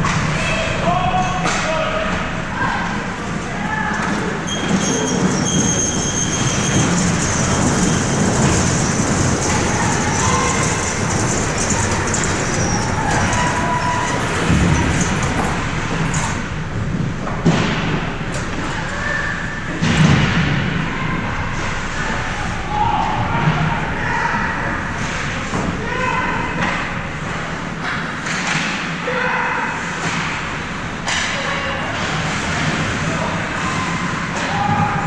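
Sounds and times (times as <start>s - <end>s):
crowd noise: 0.0s - 35.0s
hockey sticks and puck clacking: 26.6s - 29.3s, 29.9s - 35.0s.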